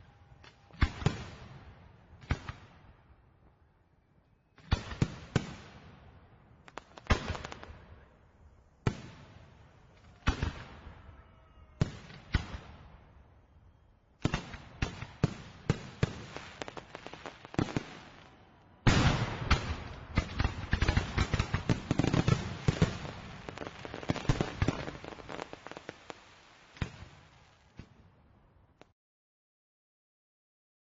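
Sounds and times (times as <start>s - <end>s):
fireworks exploding: 4.6s - 8.2s, 8.8s - 11.0s, 14.2s - 28.2s.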